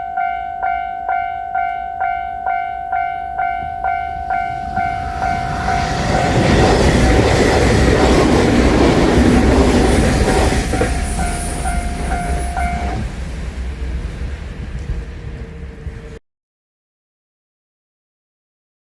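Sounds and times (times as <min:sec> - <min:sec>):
train wheels on rails: 0:00.2 - 0:16.2
level crossing bell dinging: 0:10.2 - 0:13.1.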